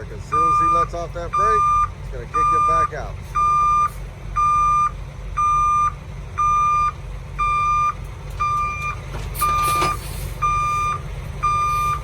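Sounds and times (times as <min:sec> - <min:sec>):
diesel engine rumble: 0:00.0 - 0:12.0
truck backup alarm beeping: 0:00.0 - 0:12.0
short air hiss: 0:09.6 - 0:10.4.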